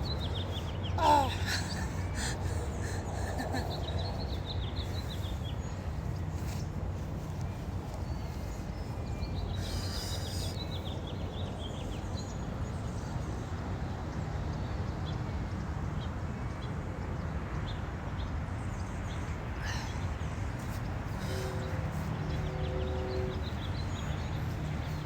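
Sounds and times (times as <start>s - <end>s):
small birds chirping: 0.0s - 12.4s.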